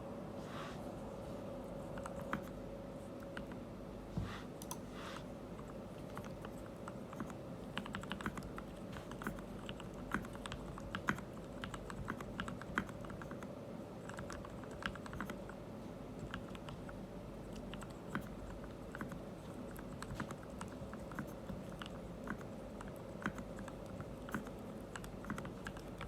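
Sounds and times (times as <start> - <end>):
mechanical keyboard typing: 5.6 - 15.6, 16.2 - 26.0.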